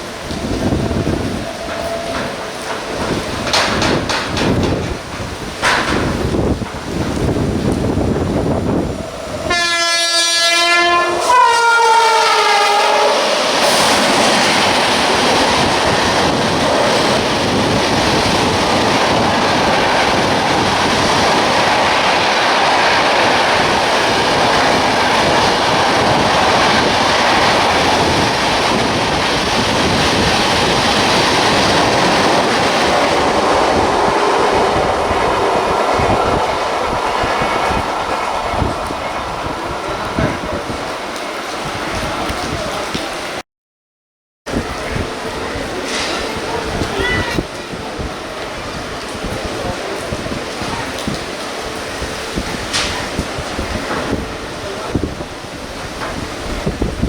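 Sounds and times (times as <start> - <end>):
train coaches rushing and clattering: 0.0 - 43.4, 44.5 - 57.0
train horn blasts: 9.4 - 13.3.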